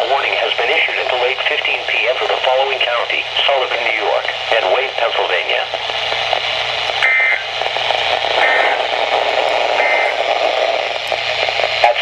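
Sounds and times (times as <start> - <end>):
radio static: 0.0 - 12.0
buzzy two-tone data bursts: 7.0 - 12.0.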